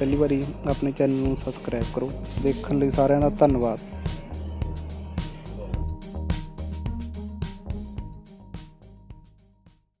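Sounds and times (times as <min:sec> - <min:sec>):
background music with a beat: 0:00.0 - 0:10.0.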